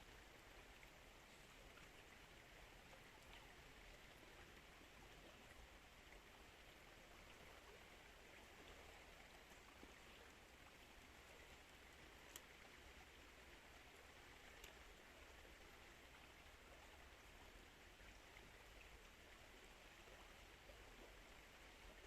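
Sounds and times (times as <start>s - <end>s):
river water flowing: 0.0s - 22.0s
small tick: 12.0s - 12.9s, 14.4s - 15.0s.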